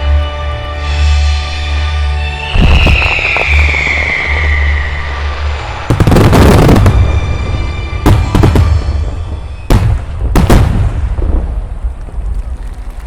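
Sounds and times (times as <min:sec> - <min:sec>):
fireworks shells bursting: 0:02.5 - 0:10.8.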